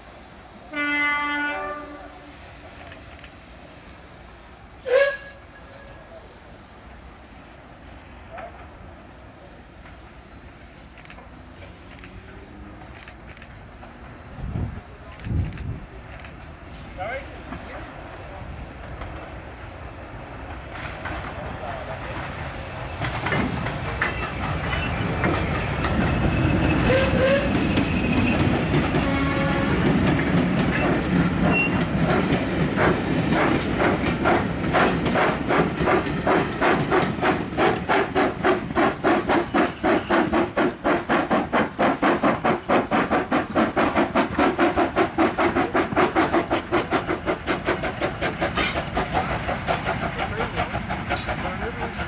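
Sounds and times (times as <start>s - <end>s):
steam hiss: 0.0s - 52.0s
steam locomotive chuffing: 0.0s - 52.0s.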